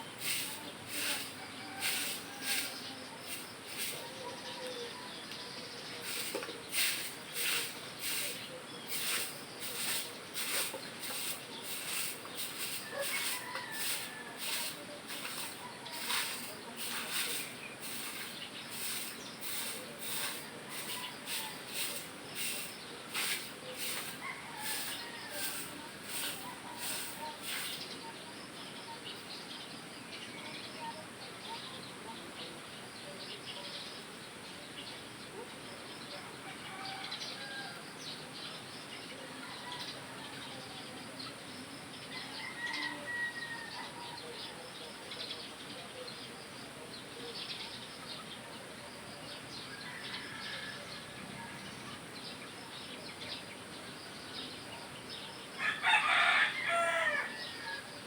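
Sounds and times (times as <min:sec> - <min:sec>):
broom sweeping: 0:00.0 - 0:04.3, 0:06.0 - 0:28.0.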